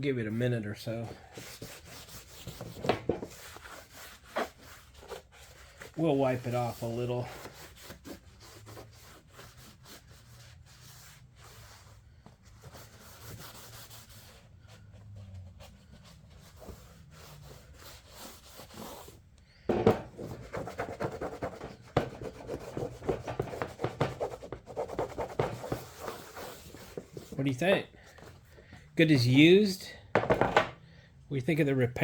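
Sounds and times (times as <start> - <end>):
rag rubbing on plastic: 0.9 - 11.9, 16.1 - 28.4.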